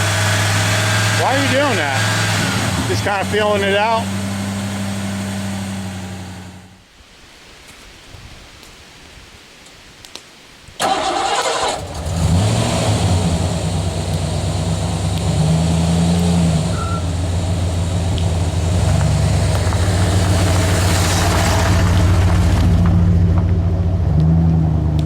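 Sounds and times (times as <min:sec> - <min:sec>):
starter cranking engine: 0:10.8 - 0:12.3
car engine idling: 0:10.8 - 0:25.0.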